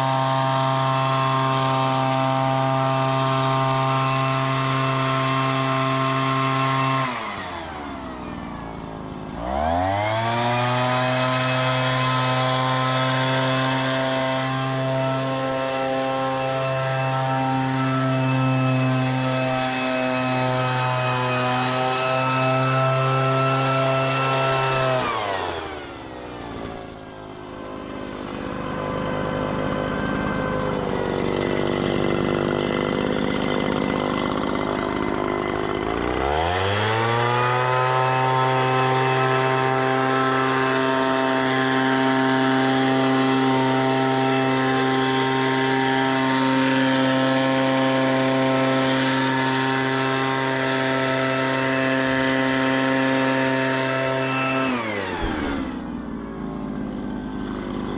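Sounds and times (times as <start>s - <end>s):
leaf blower engine revving and idling: 0.0s - 57.9s.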